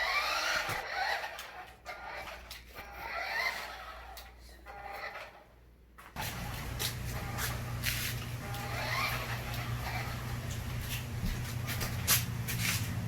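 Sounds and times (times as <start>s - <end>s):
toy car motor whirring: 0.0s - 5.5s, 8.4s - 10.5s
steady low hum: 6.2s - 13.0s.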